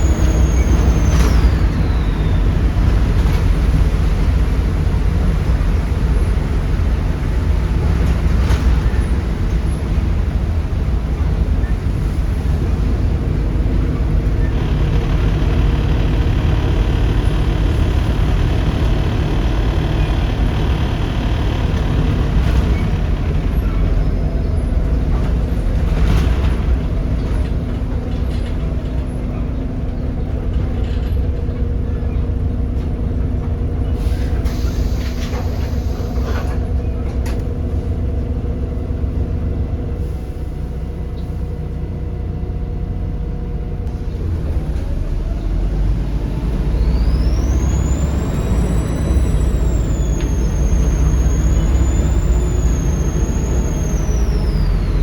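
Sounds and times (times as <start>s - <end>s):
bus body knocks and rattles: 0.0s - 34.0s
bus diesel engine rumble: 0.0s - 55.0s.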